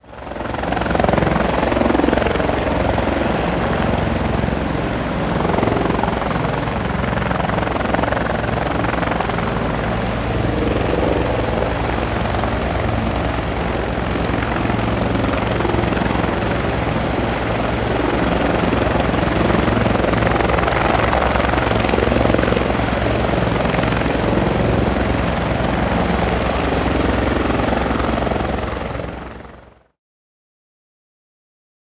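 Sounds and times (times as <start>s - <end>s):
helicopter rotor chopping: 0.1s - 29.1s
helicopter engine noise: 0.1s - 29.8s
high whine: 8.8s - 14.4s.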